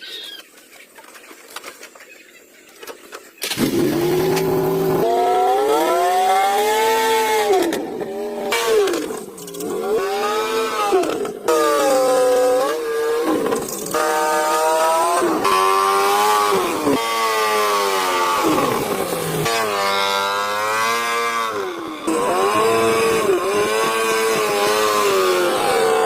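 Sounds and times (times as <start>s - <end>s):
engine revving: 3.4s - 26.0s.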